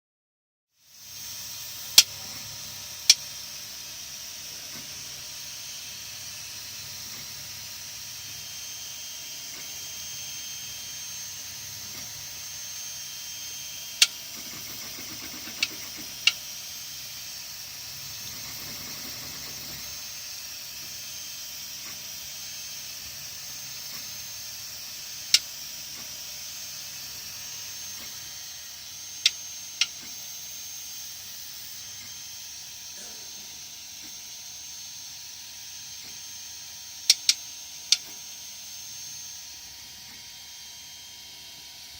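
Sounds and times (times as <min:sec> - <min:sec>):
sharp clicks: 0:37.1 - 0:38.1.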